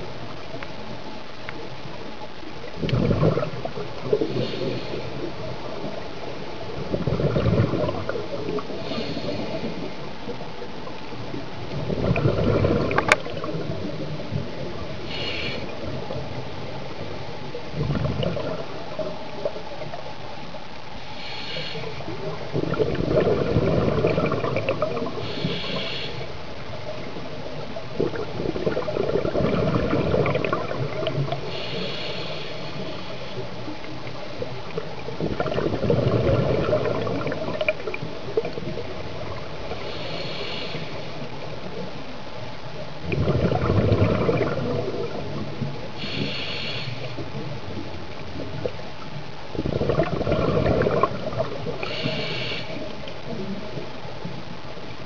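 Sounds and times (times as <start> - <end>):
exhaled bubbles rumbling underwater: 0.0 - 55.0
hissing regulator inhalations: 4.2 - 5.3, 8.7 - 9.9, 15.0 - 15.8, 21.1 - 22.1, 25.2 - 26.4, 31.4 - 33.5, 39.7 - 41.3, 46.0 - 47.2, 51.8 - 52.9.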